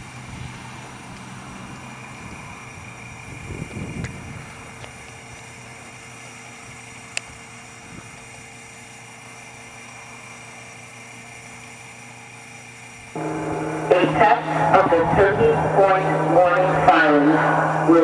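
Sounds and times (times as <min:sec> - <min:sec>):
steady mechanical drone: 0:00.0 - 0:18.0
low rumbling: 0:13.2 - 0:18.0.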